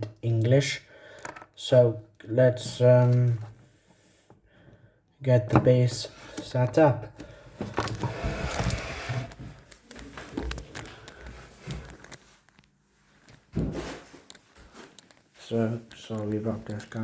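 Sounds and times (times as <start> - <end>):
handling rustling and knocks: 5.5 - 17.0.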